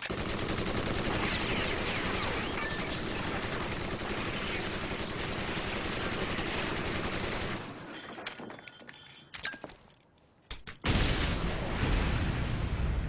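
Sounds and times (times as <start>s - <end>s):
automatic gunfire: 0.0s - 7.9s
sharp clicks and metallic clinks: 8.1s - 10.8s.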